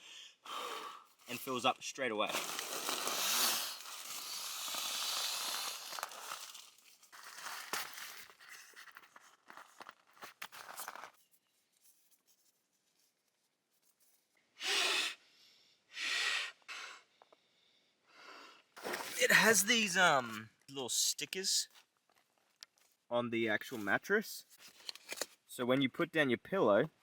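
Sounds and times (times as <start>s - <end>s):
nylon crinkling and rustling: 1.2s - 12.3s
puffs of air blown: 14.6s - 17.1s.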